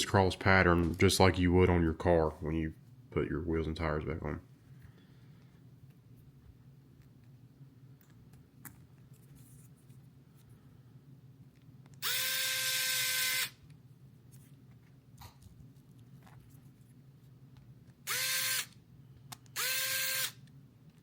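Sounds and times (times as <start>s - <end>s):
electric drill whine: 12.0s - 13.6s, 18.1s - 18.7s, 19.6s - 20.4s.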